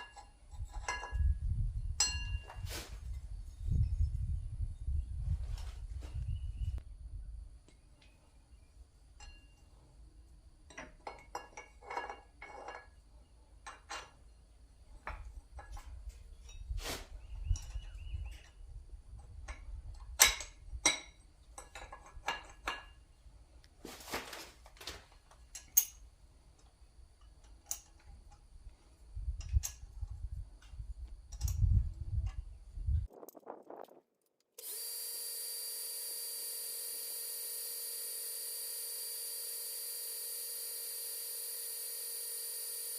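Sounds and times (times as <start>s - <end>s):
hand tools clinking and knocking: 0.0s - 1.4s, 9.1s - 9.8s, 10.6s - 16.8s, 17.4s - 23.1s, 24.8s - 28.4s
machine hum: 34.6s - 42.9s.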